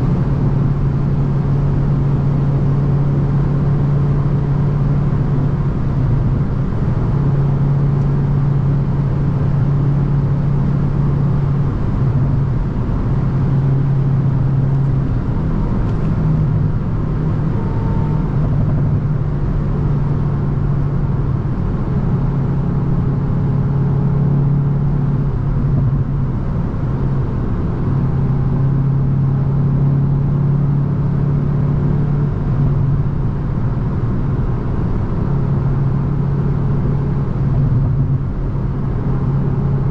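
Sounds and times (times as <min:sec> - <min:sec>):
car engine droning: 0:00.0 - 0:39.9
tyre and road noise: 0:05.2 - 0:22.0.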